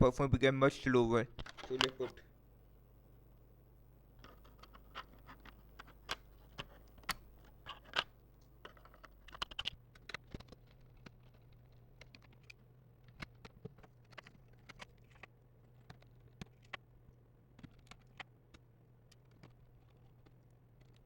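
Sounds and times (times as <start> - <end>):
hands handling laptop parts: 4.2 - 16.9.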